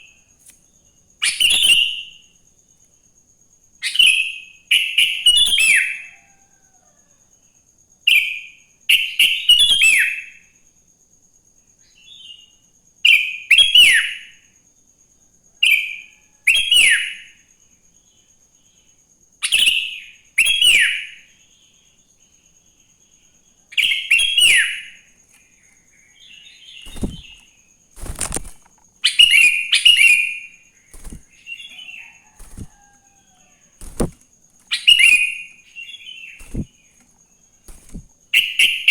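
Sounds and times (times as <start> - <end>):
dull thumps: 26.9 - 27.4, 31.0 - 31.3, 33.8 - 34.8, 36.4 - 37.1, 37.7 - 38.2.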